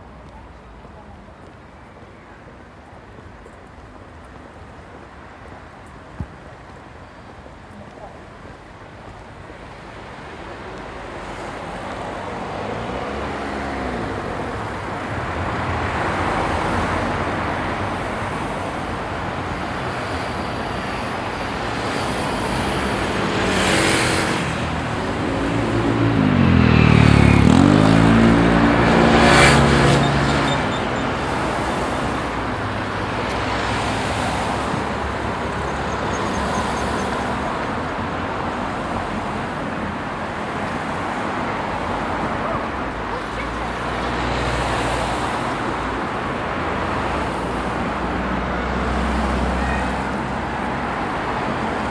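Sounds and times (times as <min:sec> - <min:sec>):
passing cars: 0:00.0 - 0:51.9
vehicle passing close: 0:11.6 - 0:51.9.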